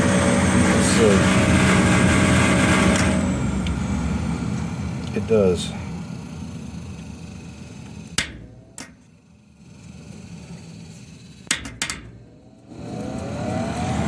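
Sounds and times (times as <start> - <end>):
fan starting with rising whine: 0.0 - 14.0
furnace fan running down: 0.0 - 14.0.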